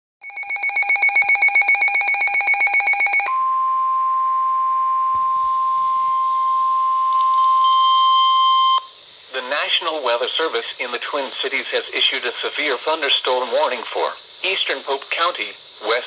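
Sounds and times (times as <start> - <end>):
steady warning alarm tone: 0.2 - 8.9.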